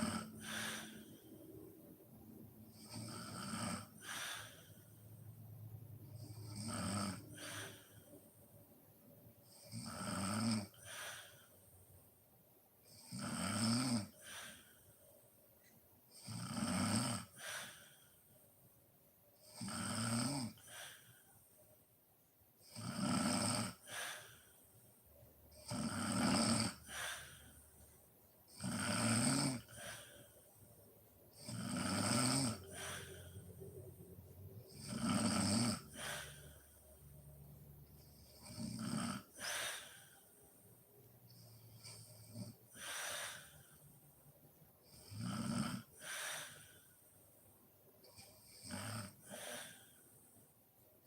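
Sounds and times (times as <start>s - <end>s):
woman snoring: 0.0s - 1.5s, 2.7s - 4.9s, 6.1s - 8.1s, 9.5s - 11.5s, 12.9s - 14.7s, 16.1s - 18.0s, 19.4s - 21.1s, 22.6s - 24.6s, 25.5s - 27.6s, 28.5s - 30.4s, 31.3s - 33.6s, 34.7s - 36.8s, 38.1s - 40.3s, 44.9s - 46.8s, 48.1s - 50.0s
quiet breath: 0.0s - 6.6s, 7.2s - 9.8s, 10.7s - 13.1s, 14.0s - 16.2s, 17.3s - 19.6s, 20.5s - 22.8s, 23.8s - 25.7s, 26.7s - 29.0s, 29.6s - 34.9s, 35.7s - 45.2s, 45.8s - 51.0s.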